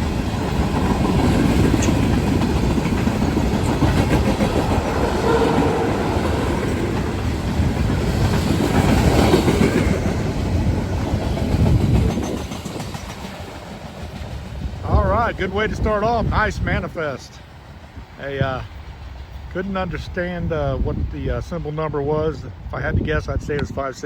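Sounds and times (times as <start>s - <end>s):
wheel clickety-clack: 0.0s - 14.8s
freight train rolling by: 0.0s - 24.0s.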